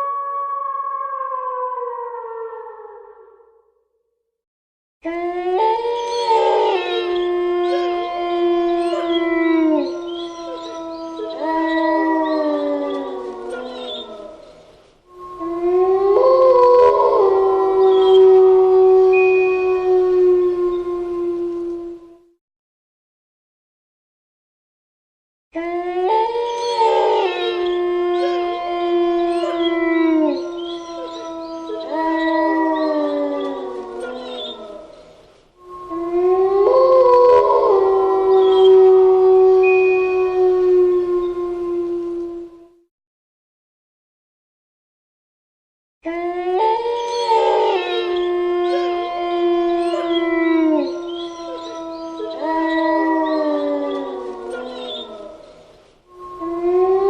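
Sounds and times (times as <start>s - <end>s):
wolves howling in chorus: 5.1s - 22.2s, 25.6s - 42.8s, 46.1s - 57.0s.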